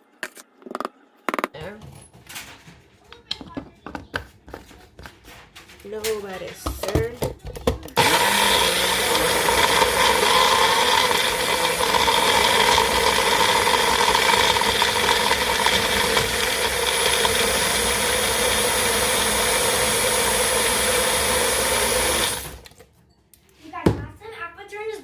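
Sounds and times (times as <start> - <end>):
blender running: 8.0 - 22.7.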